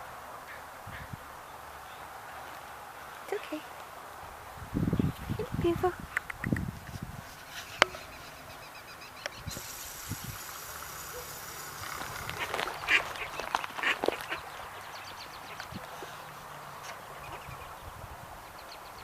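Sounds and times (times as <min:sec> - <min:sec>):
ducks quacking: 0:10.4 - 0:17.7.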